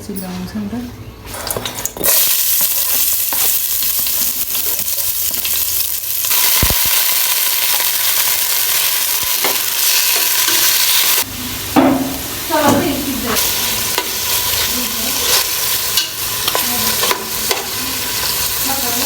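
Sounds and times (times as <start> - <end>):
chicken sizzling in oil: 2.1 - 11.3.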